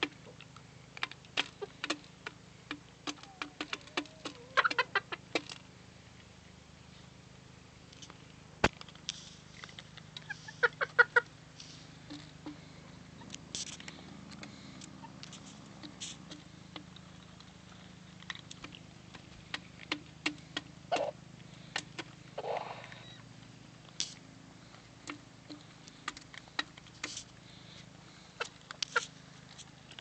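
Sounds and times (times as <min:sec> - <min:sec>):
chickens pecking: 0:00.0 - 0:07.2, 0:07.9 - 0:30.0
faint low hum: 0:00.0 - 0:30.0
chickens clucking: 0:03.0 - 0:05.6, 0:09.5 - 0:23.2, 0:28.2 - 0:29.2.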